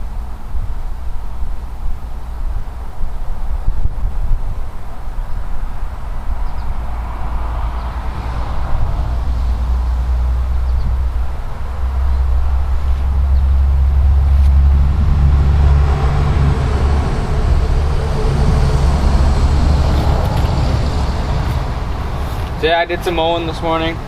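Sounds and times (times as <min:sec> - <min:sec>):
engine droning: 0:05.8 - 0:24.0.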